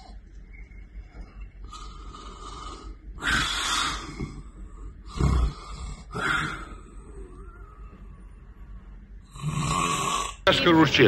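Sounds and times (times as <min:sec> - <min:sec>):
person snoring: 0:01.6 - 0:10.5.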